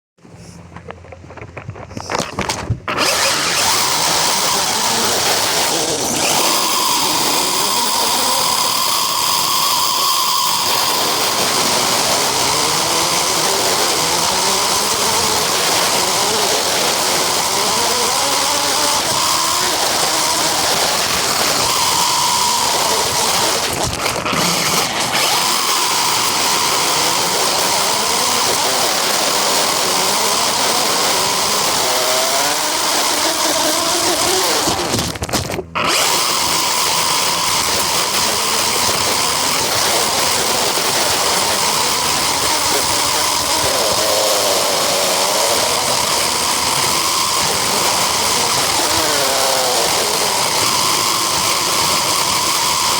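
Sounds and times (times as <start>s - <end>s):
tyre and wind noise: 0.2s - 52.9s
toy car motor whine: 0.4s - 52.9s.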